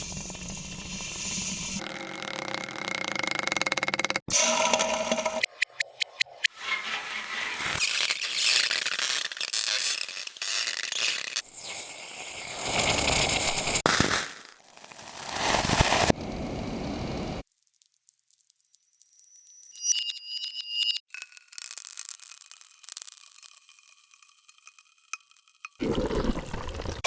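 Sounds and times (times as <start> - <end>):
hot material hissing and sizzling: 6.9 - 16.2.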